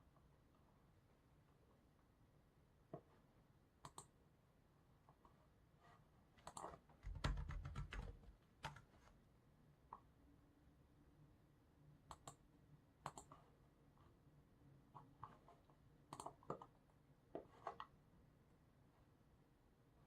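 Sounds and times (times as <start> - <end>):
mouse and keyboard clicks: 3.8 - 4.1, 6.4 - 9.1, 12.1 - 12.4, 13.0 - 13.4, 14.9 - 16.8, 17.4 - 18.0.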